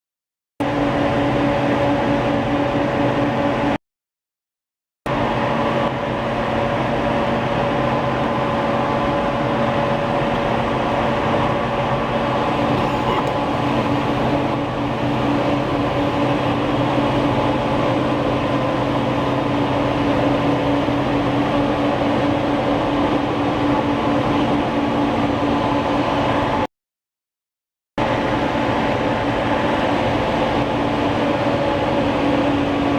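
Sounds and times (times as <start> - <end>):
printing press running: 12.7 - 17.5.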